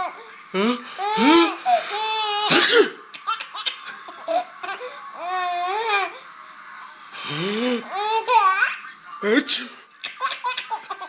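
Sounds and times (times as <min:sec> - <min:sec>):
baby laughing: 0:01.0 - 0:06.1, 0:10.0 - 0:11.0.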